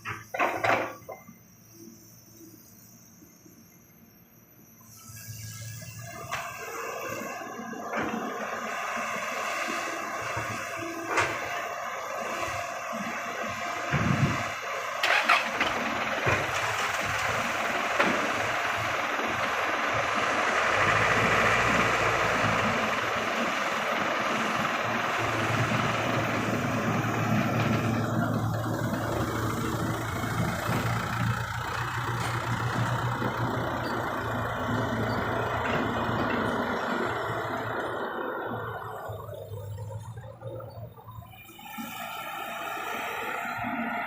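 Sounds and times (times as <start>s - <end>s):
heavy diesel engine running: 5.8s - 44.0s
deep engine hum: 16.0s - 42.0s.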